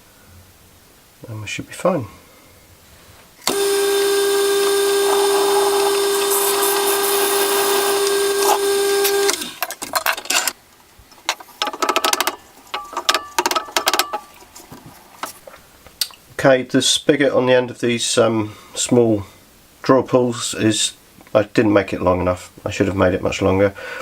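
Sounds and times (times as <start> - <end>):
wood lathe whining: 3.4 - 9.6.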